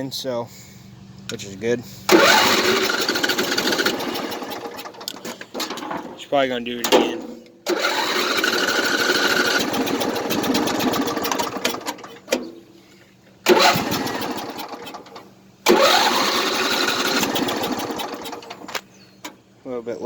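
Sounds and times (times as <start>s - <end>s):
mower engine running: 2.1s - 12.3s, 13.4s - 18.8s.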